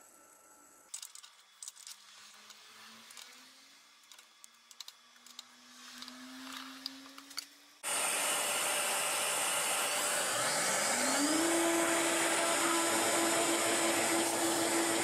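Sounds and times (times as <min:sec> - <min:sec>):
machine spindle motor humming: 0:04.7 - 0:15.0.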